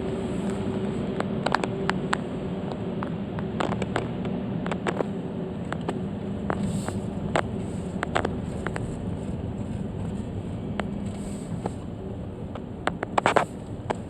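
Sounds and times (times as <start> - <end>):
car engine and rolling noise: 0.0 - 14.0
sharp clicks and knocks: 0.4 - 9.0, 12.5 - 14.0.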